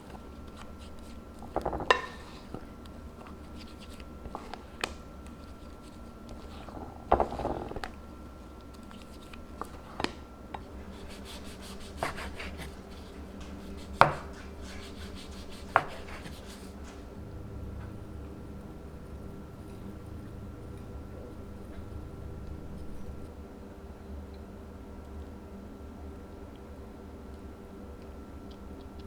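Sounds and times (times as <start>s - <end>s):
utensils and dishes clicking: 0.0s - 17.0s
faint steady hum: 0.0s - 29.0s.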